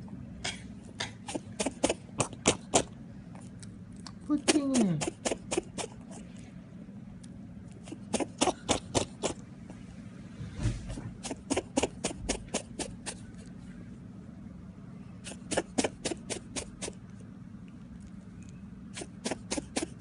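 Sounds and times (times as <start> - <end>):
rabbit sneezing: 0.5 - 3.0, 4.4 - 6.4, 7.8 - 9.8, 10.6 - 13.5, 15.1 - 17.1, 18.8 - 20.0.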